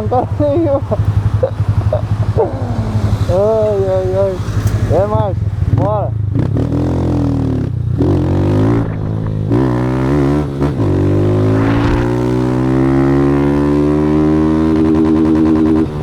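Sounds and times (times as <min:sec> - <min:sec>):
motorcycle engine accelerating: 0:06.3 - 0:16.0.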